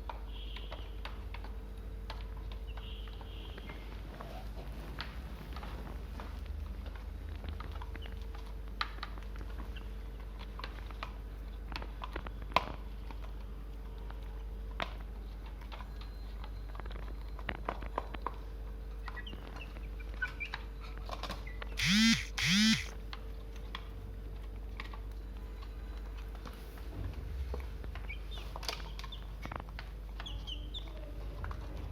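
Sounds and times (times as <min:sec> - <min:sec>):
chicks pecking feed: 0:16.9 - 0:22.9, 0:27.9 - 0:31.9
steady low hum: 0:21.8 - 0:22.9.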